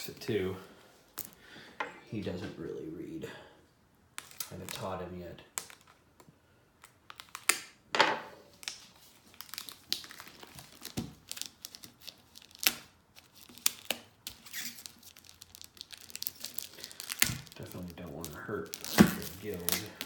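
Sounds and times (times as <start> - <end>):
plastic shrink-wrap crinkling and tearing: 8.5 - 20.0.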